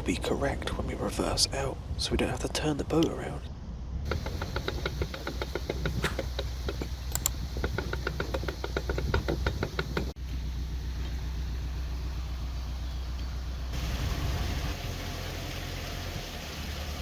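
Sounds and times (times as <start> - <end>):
fast even ticking: 4.1 - 10.2
boat engine running: 4.1 - 15.1.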